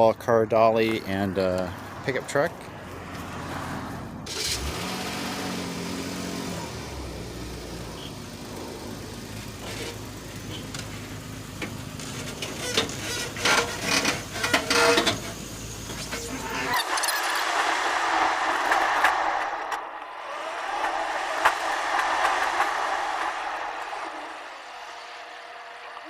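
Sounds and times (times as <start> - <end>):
vehicle engine running: 5.6 - 12.6.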